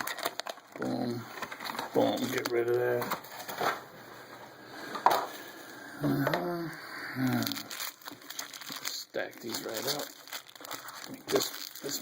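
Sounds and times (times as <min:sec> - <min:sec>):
cardboard box and card packs handled: 0:00.0 - 0:05.5, 0:07.3 - 0:12.0
mumbled speech: 0:06.0 - 0:07.7.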